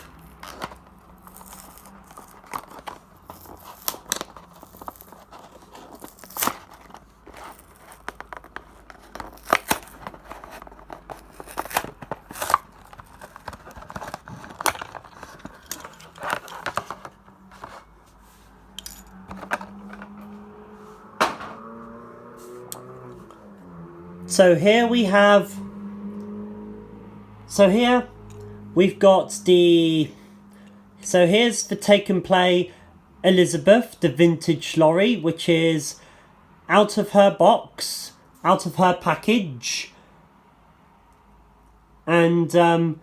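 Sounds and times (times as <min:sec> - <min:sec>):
packaging being torn open: 0:00.0 - 0:17.2.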